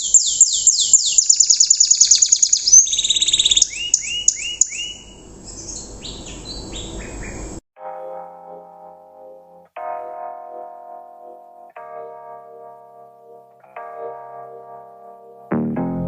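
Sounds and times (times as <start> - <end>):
canary singing trills: 0.0 - 7.6.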